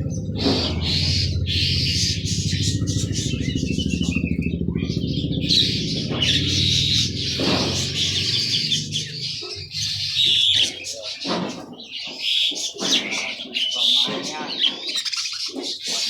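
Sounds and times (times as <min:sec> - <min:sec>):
motorcycle engine running: 0:00.0 - 0:10.7
songbirds chirping: 0:00.0 - 0:16.0.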